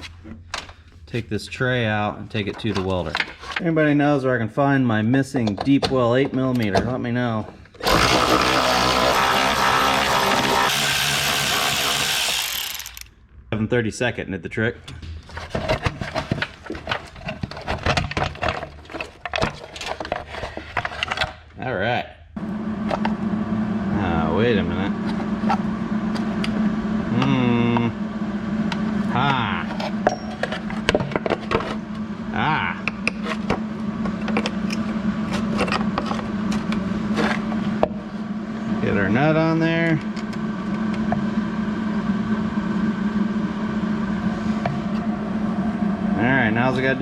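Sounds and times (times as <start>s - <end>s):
low steady hum: 0.0s - 47.0s
hand tools and metal parts clicking: 11.5s - 13.1s.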